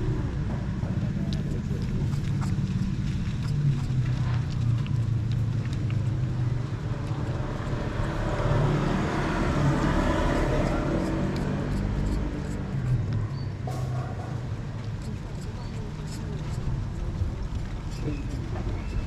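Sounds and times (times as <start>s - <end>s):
road noise of passing traffic: 0.0s - 19.0s
vehicle engine humming: 0.0s - 19.0s.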